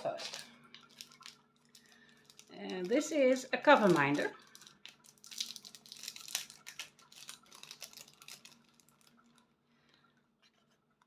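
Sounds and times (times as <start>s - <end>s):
packaging rustling and crinkling: 0.0s - 9.5s.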